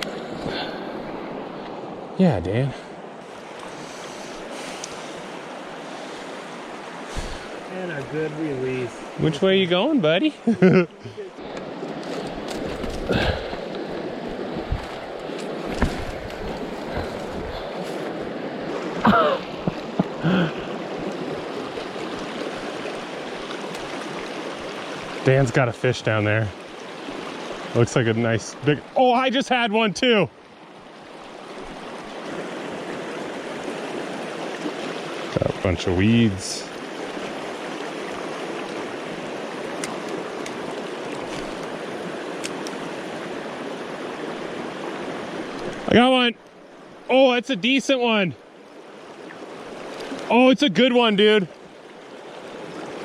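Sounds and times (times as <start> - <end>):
river rushing over riffles: 0.0 - 25.4
river current flowing: 0.0 - 53.0.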